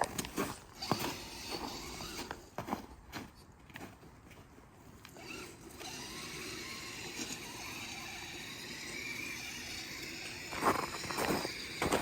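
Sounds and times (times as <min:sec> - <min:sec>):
electric motor whine: 0:00.8 - 0:02.4, 0:05.1 - 0:12.0.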